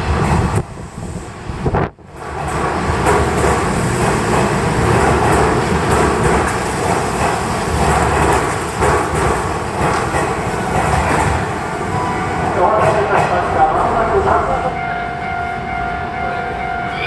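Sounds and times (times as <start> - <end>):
train rumble: 0.0 - 17.0
wheels clicking over rails: 2.2 - 11.6.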